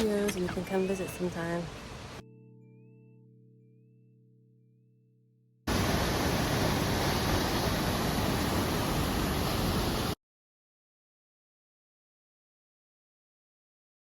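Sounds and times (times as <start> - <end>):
water rushing: 0.0 - 2.2, 5.7 - 10.2.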